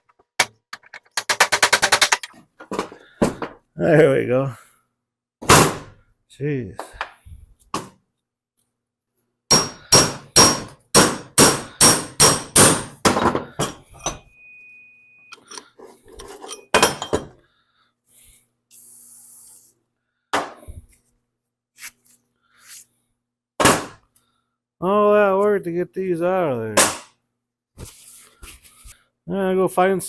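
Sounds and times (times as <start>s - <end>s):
metal knocks and clinks: 0.0s - 2.3s, 15.3s - 17.3s.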